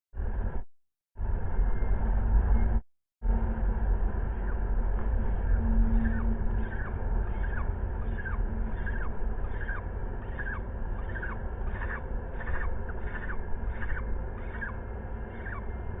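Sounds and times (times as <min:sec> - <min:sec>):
low rumble: 0:00.2 - 0:16.0
falcons calling: 0:05.8 - 0:15.8.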